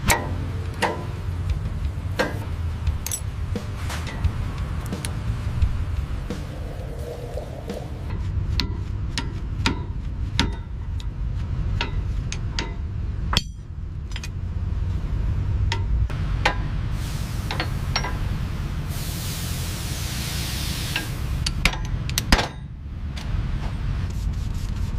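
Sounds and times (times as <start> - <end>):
steady low rumble: 0.0 - 19.7.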